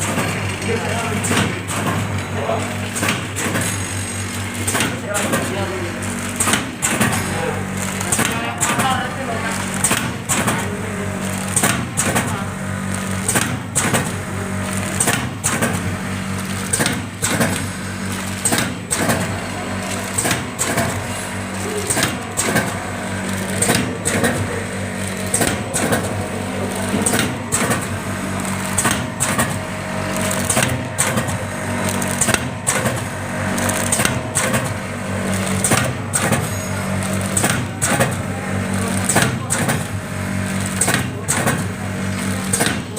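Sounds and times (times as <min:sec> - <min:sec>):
machine motor hum: 0:00.0 - 0:42.9
sharp mechanical clacks: 0:00.0 - 0:42.9.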